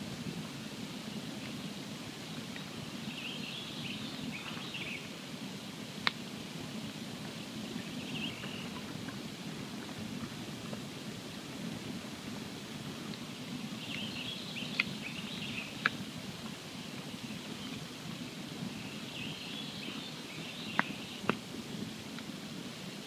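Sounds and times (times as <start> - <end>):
campfire rushing and crackling: 0.0 - 23.0
fire pops: 6.0 - 18.8, 20.7 - 22.4.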